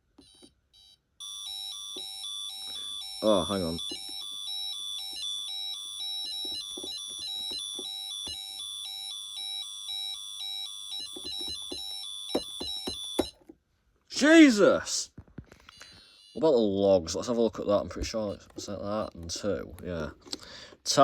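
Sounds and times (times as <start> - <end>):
two-pitch electronic alarm tone: 0.2 - 13.4, 15.8 - 16.7.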